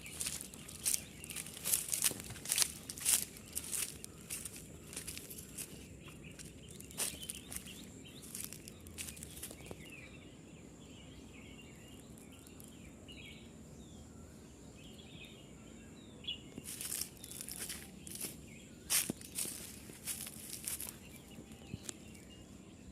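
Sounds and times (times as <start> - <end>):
steps crunching dry leaves: 0.0 - 10.0, 16.6 - 22.3
faint chirping: 0.0 - 22.9.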